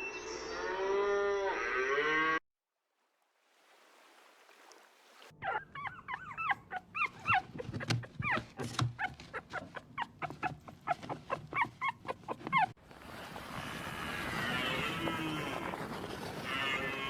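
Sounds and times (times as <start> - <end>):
animal yelping calls: 5.4 - 12.8.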